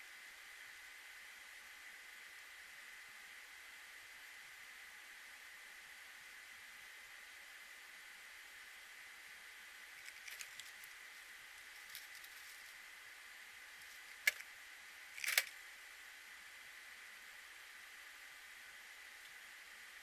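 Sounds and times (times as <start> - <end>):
steady faint hiss: 0.0 - 20.0
small clicks: 10.0 - 11.0, 13.8 - 14.5, 15.2 - 15.6
scratchy rustle: 10.0 - 11.1, 11.7 - 12.8.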